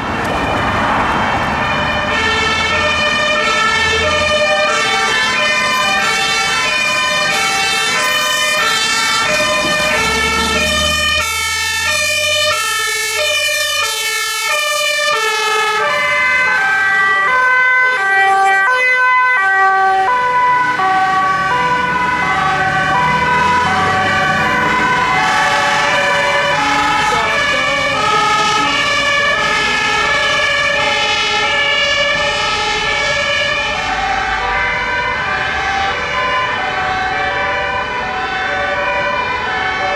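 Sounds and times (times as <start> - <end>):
low rumble of vehicle engines: 0.0 - 13.7
fire engine sirens: 0.0 - 39.9.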